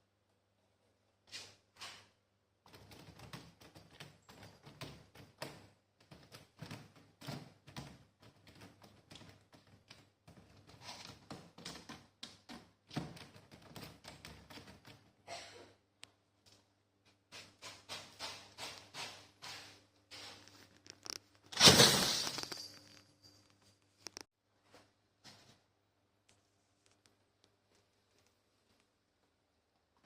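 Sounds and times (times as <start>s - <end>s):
cat scratching and tapping: 2.6s - 15.2s, 17.3s - 19.8s.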